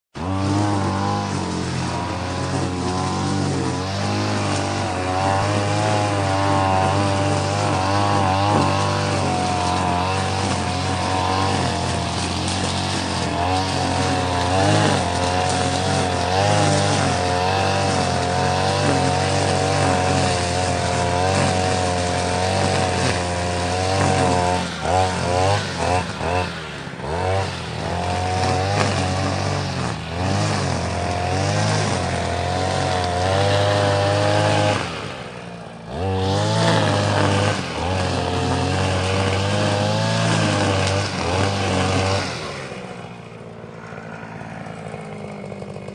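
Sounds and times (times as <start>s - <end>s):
grass trimmer cutting grass: 0.1s - 45.9s.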